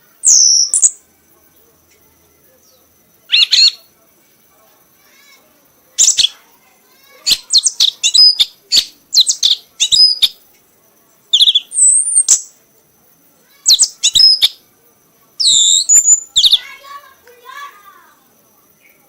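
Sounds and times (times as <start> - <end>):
songbird chirping and trilling: 0.0 - 19.0.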